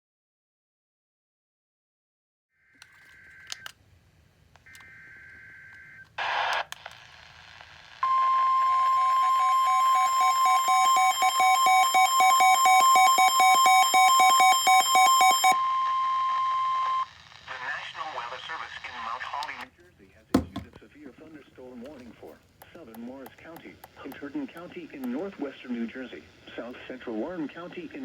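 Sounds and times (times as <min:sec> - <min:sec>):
radio static: 0:04.7 - 0:11.6, 0:13.8 - 0:28.0
loud steady alarm tone: 0:08.0 - 0:17.1
rapid alert beeps: 0:08.1 - 0:15.8.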